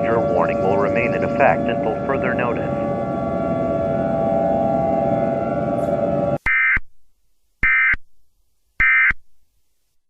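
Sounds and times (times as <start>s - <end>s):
steady droning tone: 0.0s - 6.4s.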